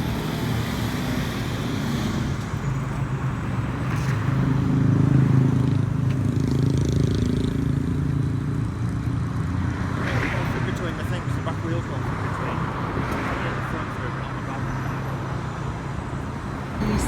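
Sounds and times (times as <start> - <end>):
traffic noise: 0.0 - 17.0
vehicle engine hum: 16.1 - 17.0.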